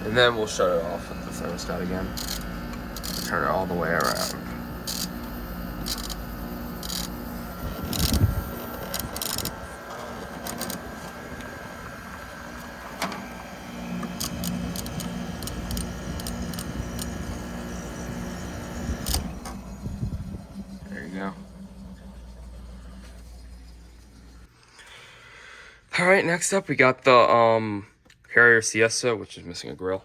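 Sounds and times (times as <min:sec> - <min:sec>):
air conditioner humming: 0:00.0 - 0:29.2
sharp click: 0:19.0 - 0:19.3.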